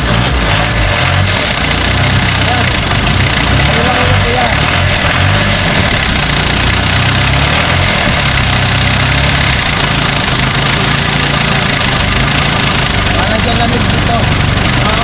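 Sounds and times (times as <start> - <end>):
diesel engine idling: 0.0 - 15.0.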